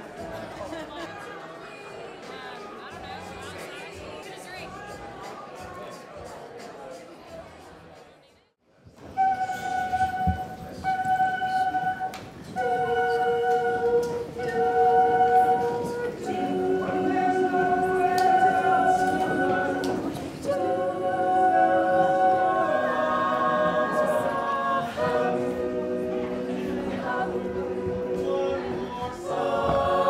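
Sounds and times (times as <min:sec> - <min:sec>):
choir-like music: 0:09.0 - 0:30.0.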